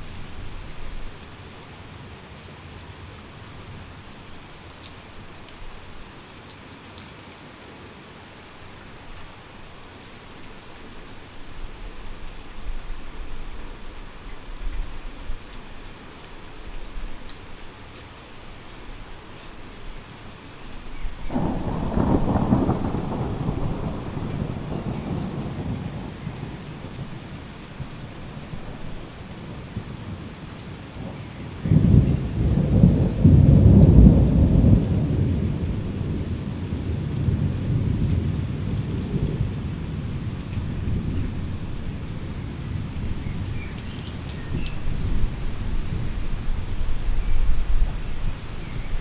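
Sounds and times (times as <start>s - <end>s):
heavy rain falling: 0.0s - 49.0s
thunder rolling: 21.2s - 30.2s, 31.0s - 49.0s.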